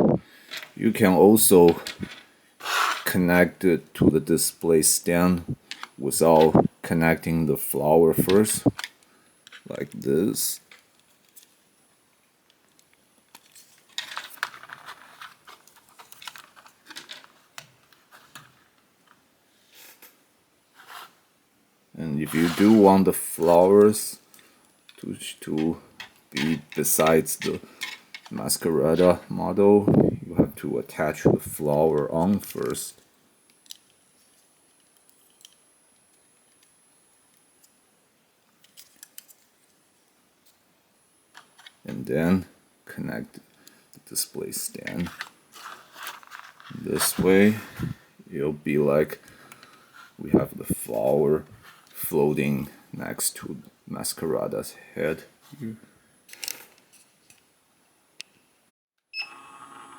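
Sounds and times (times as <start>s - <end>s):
plastic parts clicking and rattling: 0.4s - 0.8s, 1.7s - 3.1s, 5.7s - 6.6s, 8.2s - 11.6s, 12.5s - 19.2s, 23.6s - 29.2s, 33.5s - 37.8s, 38.6s - 39.7s, 44.8s - 47.6s, 56.3s - 57.4s.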